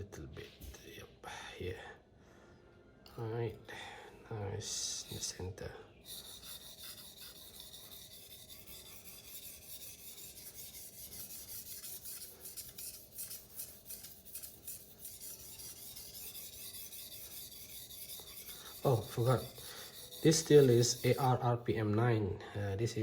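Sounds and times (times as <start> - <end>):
knife rasping on whetstone: 6.0 - 21.4.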